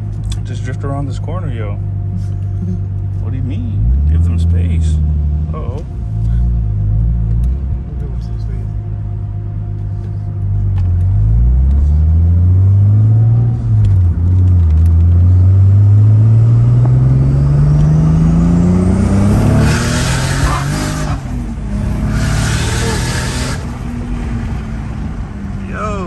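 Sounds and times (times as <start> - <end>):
car engine accelerating: 0.0 - 26.0.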